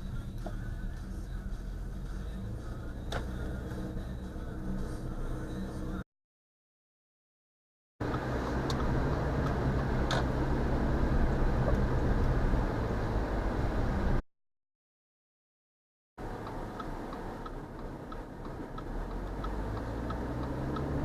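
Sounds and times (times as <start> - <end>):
car interior road noise: 0.0 - 6.0, 8.0 - 14.2, 16.2 - 21.0
sharp tick: 16.4 - 20.9.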